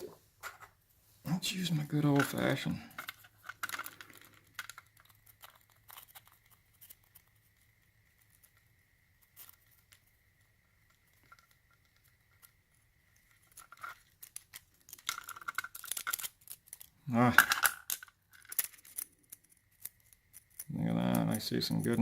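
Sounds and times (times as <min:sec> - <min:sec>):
metal lock parts clicking: 0:13.3 - 0:22.0.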